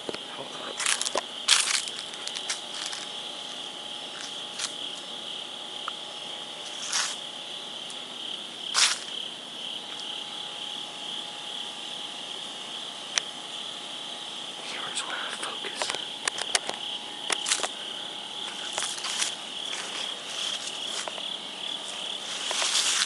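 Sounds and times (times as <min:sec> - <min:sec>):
rustling crunches: 0:00.0 - 0:05.1, 0:06.6 - 0:08.0, 0:08.7 - 0:09.3, 0:15.6 - 0:23.0
crickets trilling: 0:00.0 - 0:23.0.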